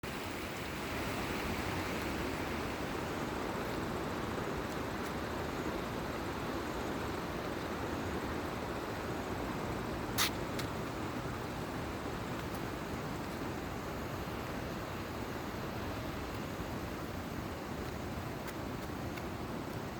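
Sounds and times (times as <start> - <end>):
mountain stream rushing: 0.0 - 19.9.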